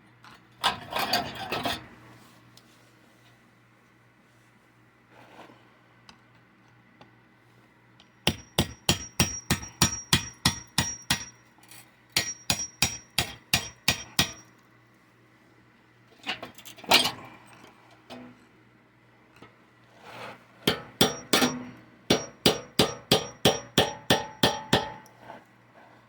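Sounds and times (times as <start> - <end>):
hammer striking metal: 8.2 - 11.4, 12.2 - 14.4, 20.7 - 25.1.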